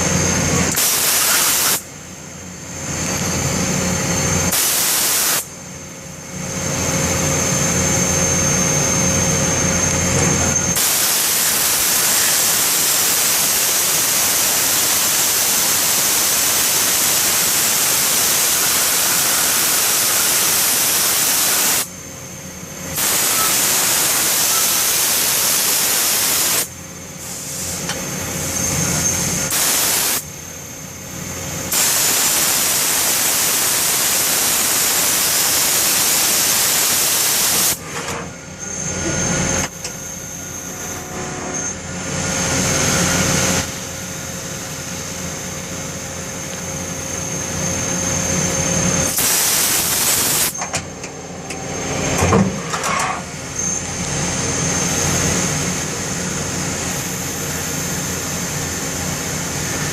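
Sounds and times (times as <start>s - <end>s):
lathe running with steady whine: 0.0s - 59.9s
loud even hiss: 0.7s - 1.9s, 4.5s - 5.6s, 10.7s - 21.9s, 22.9s - 27.9s, 29.4s - 30.4s, 31.7s - 37.8s, 42.4s - 50.6s.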